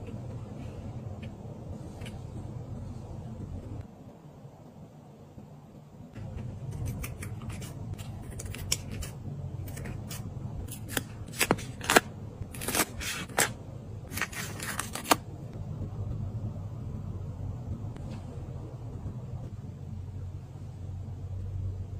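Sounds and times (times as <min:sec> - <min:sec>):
low steady hum: 0:00.0 - 0:21.9
scissors snipping paper: 0:06.7 - 0:13.5.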